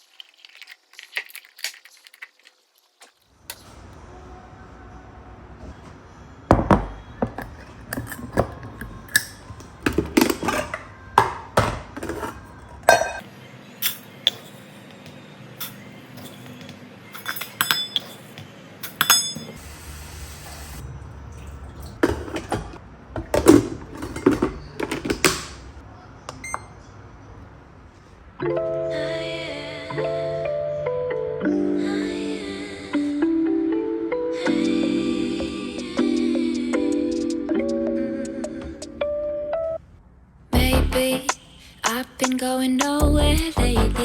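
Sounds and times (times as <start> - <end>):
dishes and jars clinking: 6.6 - 13.2, 13.8 - 14.8, 15.6 - 19.6, 22.0 - 25.6
music: 28.4 - 39.8, 40.6 - 44.0.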